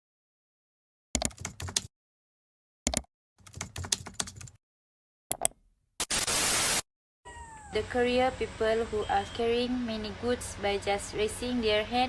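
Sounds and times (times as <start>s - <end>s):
bursts of rapid sharp clicks: 6.0s - 6.8s.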